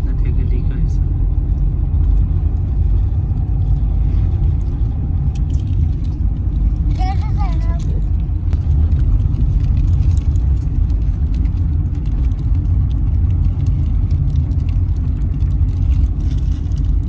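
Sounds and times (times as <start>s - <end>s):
car road and engine rumble: 0.0s - 17.0s.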